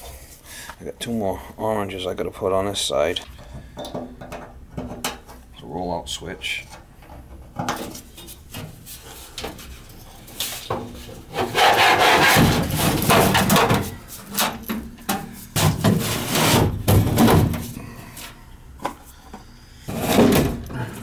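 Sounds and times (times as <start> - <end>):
parts scraping and rubbing: 7.1 - 19.1, 19.8 - 21.0.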